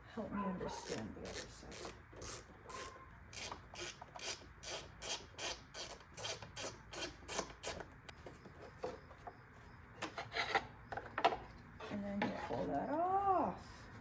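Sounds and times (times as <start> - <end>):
ratchet wrench rasping: 0.8 - 7.8.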